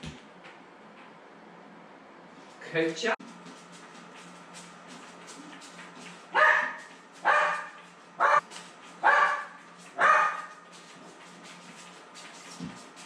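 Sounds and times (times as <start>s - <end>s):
dog barking: 6.4s - 10.6s.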